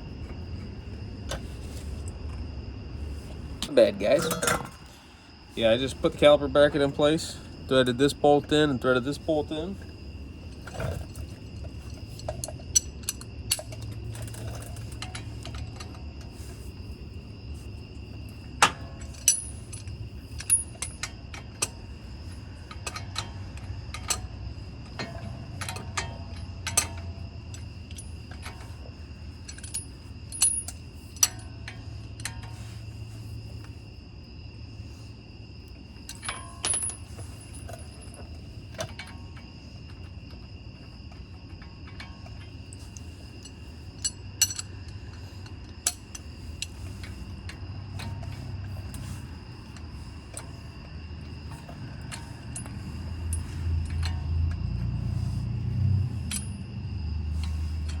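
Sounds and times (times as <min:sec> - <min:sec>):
crickets trilling: 0:00.0 - 0:58.0
metallic clicks of hand tools: 0:25.0 - 0:28.7.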